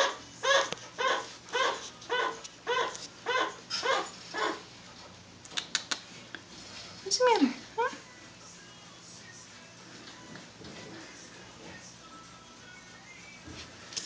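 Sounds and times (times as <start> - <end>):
chinchilla barking alarm call: 0.0 - 4.7
sharp clicks: 5.4 - 6.0.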